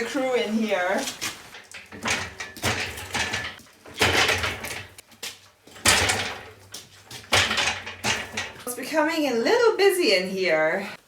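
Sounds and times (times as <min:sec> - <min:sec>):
scuffs knocks and rustles: 0:00.0 - 0:08.7.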